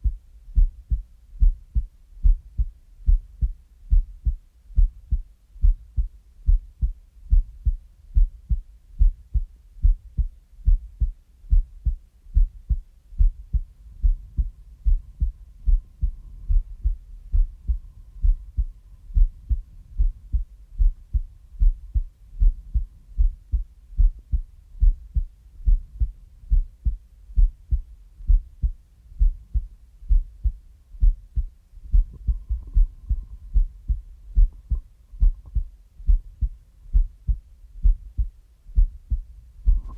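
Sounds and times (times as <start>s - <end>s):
heartbeat thumps: 0.0s - 39.9s.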